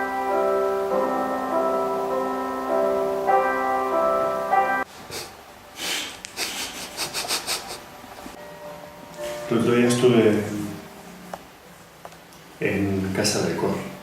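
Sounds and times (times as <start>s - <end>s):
slow piano music: 0.0s - 4.9s, 8.3s - 11.8s
soft rustles: 9.0s - 12.2s.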